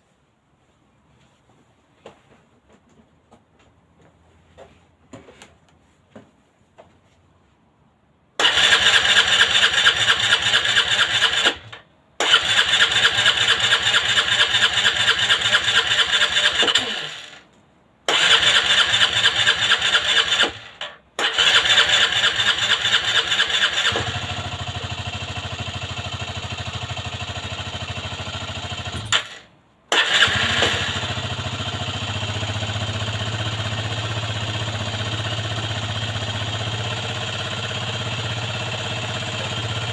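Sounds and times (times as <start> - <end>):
electric starter cranking: 8.4 - 17.4, 18.1 - 24.7, 28.8 - 33.4
scooter engine idling: 8.4 - 17.4, 18.1 - 29.4, 30.0 - 39.9.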